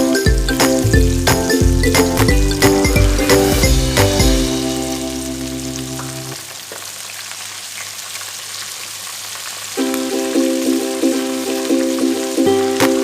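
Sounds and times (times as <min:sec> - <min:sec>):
background music: 0:00.0 - 0:06.4, 0:09.8 - 0:13.0
skin sizzling in hot oil: 0:02.6 - 0:13.0.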